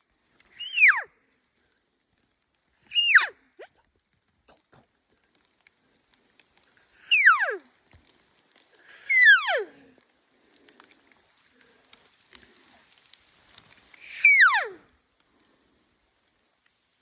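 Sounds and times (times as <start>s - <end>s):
elk calls: 0.5s - 1.1s, 2.9s - 3.4s, 7.0s - 7.7s, 8.9s - 9.8s, 14.0s - 14.8s.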